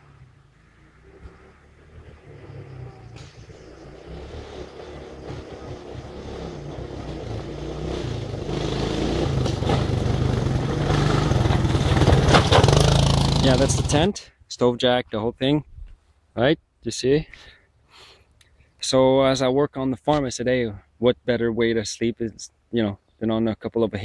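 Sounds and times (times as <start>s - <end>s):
vehicle engine approaching: 0.0s - 14.1s.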